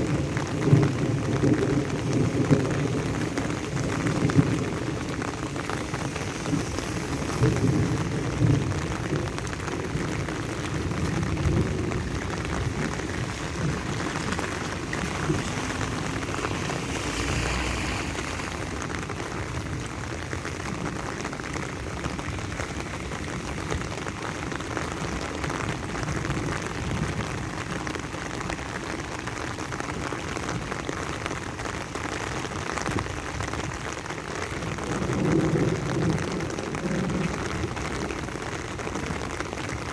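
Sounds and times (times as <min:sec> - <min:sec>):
steady rain falling: 0:00.0 - 0:39.9
low rumble: 0:02.0 - 0:24.2.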